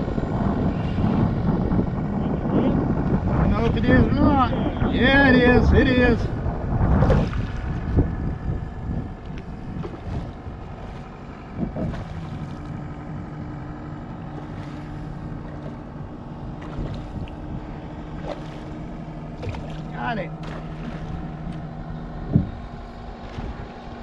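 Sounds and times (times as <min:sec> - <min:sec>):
steady low hum: 0:00.0 - 0:24.0
water around a kayak: 0:00.0 - 0:24.0
wind rumbling on microphone: 0:00.0 - 0:24.0.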